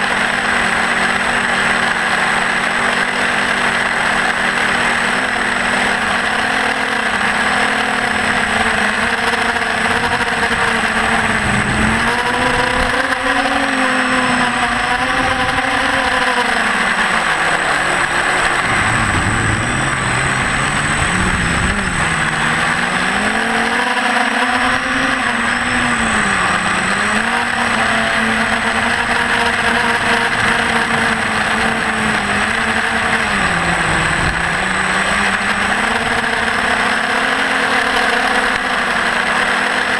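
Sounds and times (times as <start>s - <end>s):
quadcopter motors buzzing: 0.0s - 39.9s
rush of air noise: 9.7s - 13.2s, 14.2s - 23.2s.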